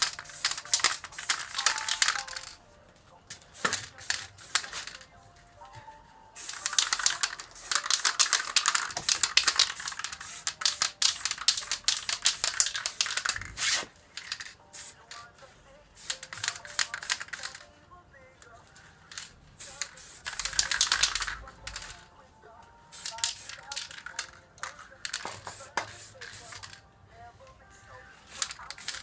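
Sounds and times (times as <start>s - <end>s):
spray-paint can hissing: 0.0s - 2.6s, 3.3s - 5.1s, 6.4s - 15.2s, 16.0s - 17.6s, 19.1s - 22.0s, 22.9s - 26.8s, 28.2s - 29.0s
faint music: 0.0s - 29.0s.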